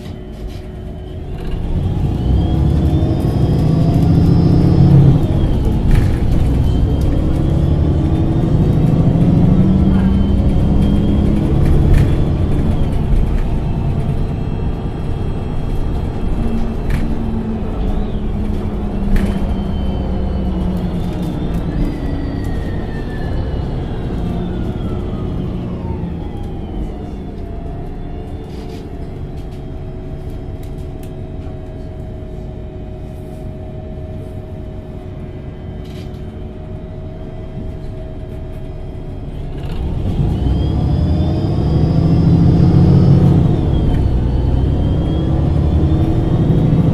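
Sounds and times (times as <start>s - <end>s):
bus engine rumble: 0.0s - 46.9s
drivetrain whine: 0.0s - 46.9s.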